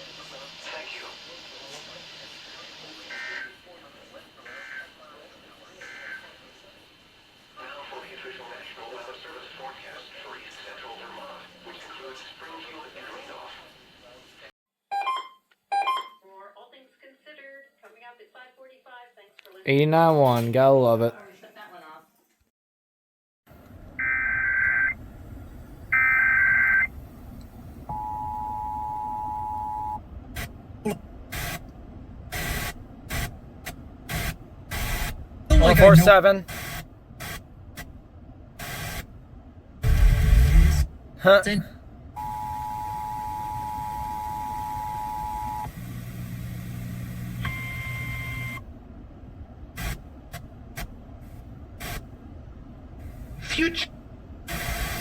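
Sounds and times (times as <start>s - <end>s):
radio static bursts: 0.0s - 5.0s, 5.6s - 6.5s, 31.3s - 31.6s, 32.3s - 37.9s, 38.6s - 39.1s, 39.8s - 41.6s, 49.8s - 50.9s, 53.1s - 53.9s, 54.5s - 55.0s
radio background hiss: 0.0s - 14.5s, 28.9s - 31.6s, 32.3s - 37.9s, 38.6s - 39.1s, 39.8s - 48.6s, 49.8s - 52.1s, 53.0s - 55.0s
two-tone attention signal: 14.9s - 16.2s, 27.9s - 30.0s
warbling high data tones: 35.5s - 36.3s, 53.4s - 53.9s.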